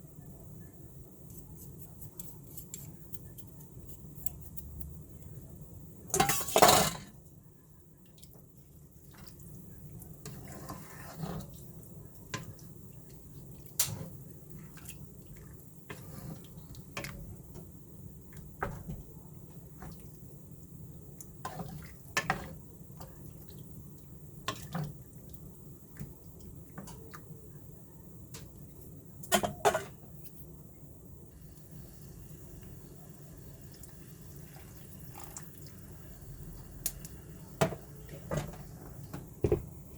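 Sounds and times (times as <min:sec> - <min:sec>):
utensils clattering: 0:06.1 - 0:07.1
utensils clinking against dishes: 0:06.1 - 0:07.1.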